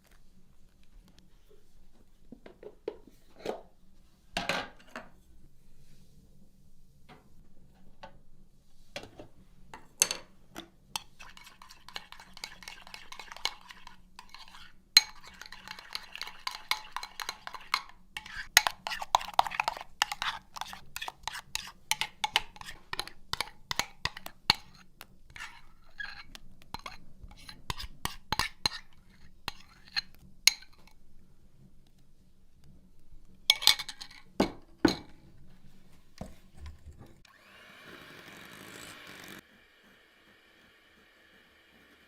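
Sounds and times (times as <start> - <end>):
kitchen utensils knocking: 33.5 - 35.2.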